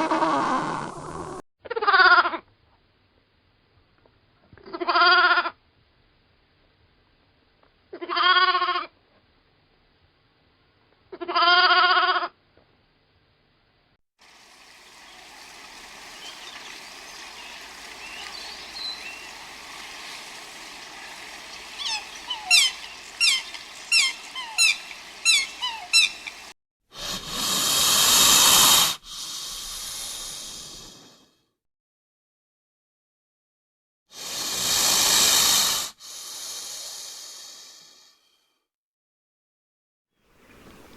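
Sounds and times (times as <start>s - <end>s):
animal bleating: 11.2s - 12.3s
soft outdoor hiss: 12.6s - 26.5s, 40.3s - 40.9s
bird chirping: 15.0s - 26.5s.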